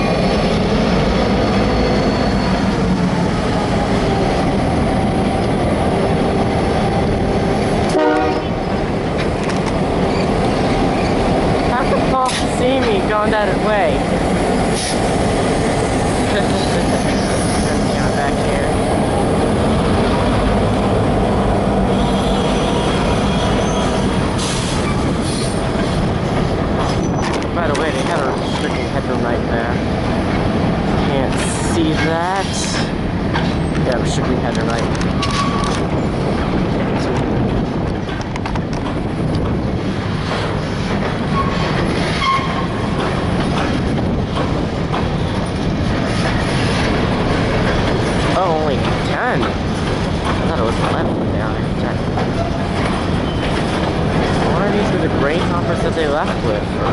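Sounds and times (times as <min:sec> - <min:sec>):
train wheels rumbling on rails: 0:00.0 - 0:56.9
wheel squeals: 0:01.6 - 0:02.9, 0:21.9 - 0:25.6, 0:26.9 - 0:27.4, 0:41.3 - 0:42.7, 0:52.4 - 0:53.8
faint high wheel squeal: 0:01.7 - 0:02.8.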